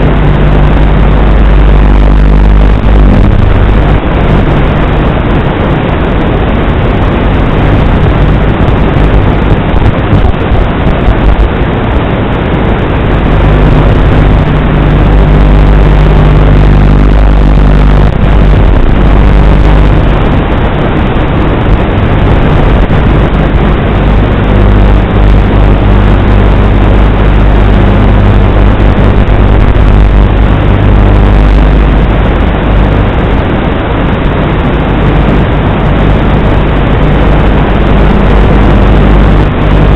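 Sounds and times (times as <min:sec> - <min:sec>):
steady low hum: 0:00.0 - 0:39.9
wind blasting microphone: 0:00.0 - 0:39.9.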